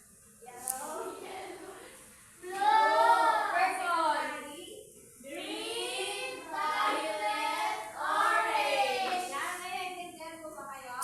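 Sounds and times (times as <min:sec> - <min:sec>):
young children singing: 0:00.6 - 0:04.4, 0:05.3 - 0:09.6.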